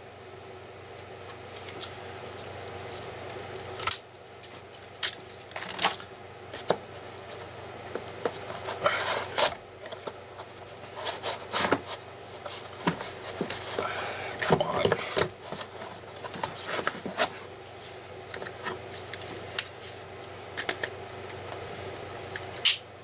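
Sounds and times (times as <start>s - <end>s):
rubbing and rustling: 6.5s - 20.1s.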